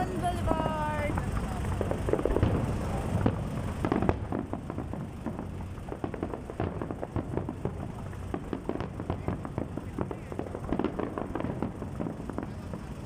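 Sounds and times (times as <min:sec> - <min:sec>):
fireworks crackling and popping: 0:00.0 - 0:13.0
low rumble: 0:00.0 - 0:13.0.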